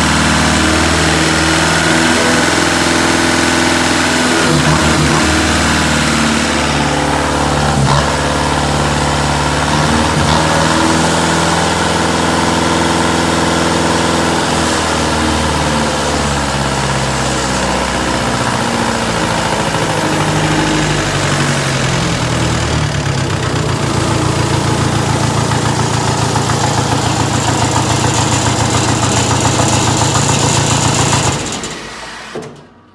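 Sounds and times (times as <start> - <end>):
diesel engine running: 0.0 - 32.6.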